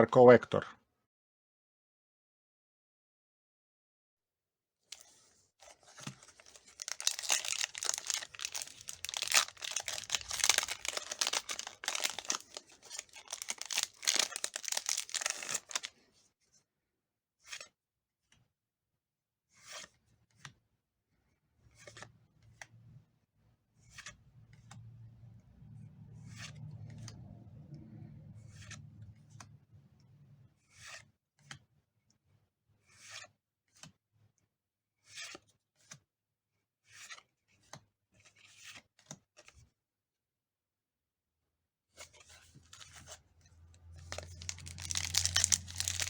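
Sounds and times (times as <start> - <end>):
foil wrapper tearing and crinkling: 6.0 - 15.9, 44.0 - 46.0.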